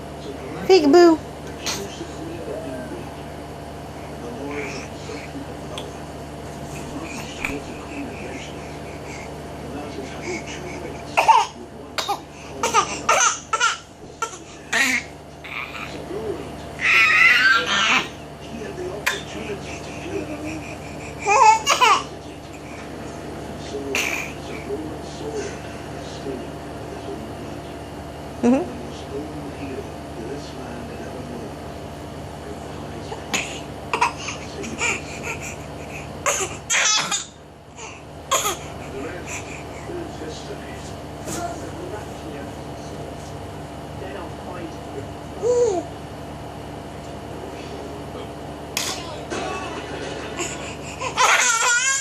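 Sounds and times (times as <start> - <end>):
baby laughing: 10.2 - 16.1, 16.8 - 18.2, 19.0 - 22.6, 33.9 - 39.6, 48.8 - 52.0
baby squealing and babbling: 16.8 - 18.1, 51.0 - 52.0.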